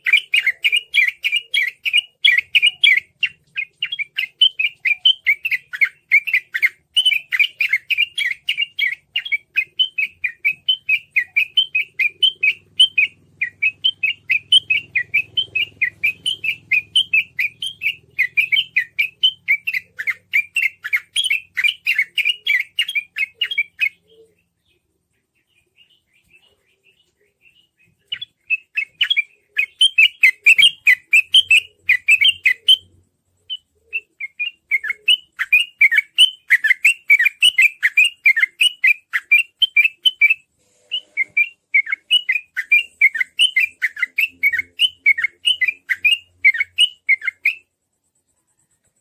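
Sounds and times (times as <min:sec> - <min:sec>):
bird chattering song: 0:00.0 - 0:49.0.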